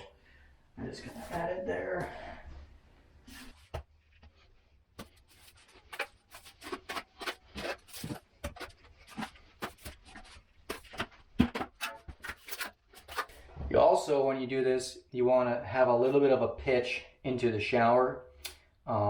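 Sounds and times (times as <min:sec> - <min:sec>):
trowels scraping mortar: 0:00.9 - 0:02.3, 0:05.0 - 0:13.5.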